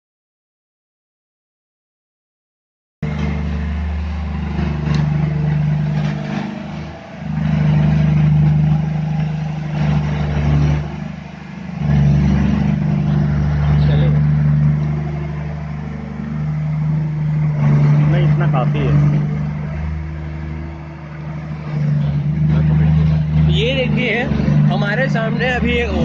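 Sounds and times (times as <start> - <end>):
diesel engine low drone: 3.0 - 26.0.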